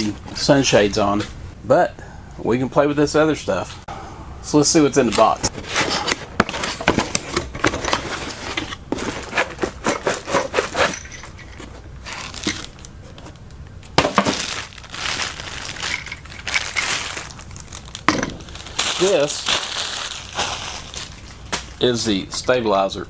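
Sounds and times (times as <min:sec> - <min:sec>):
packaging crinkling: 0:05.5 - 0:21.9.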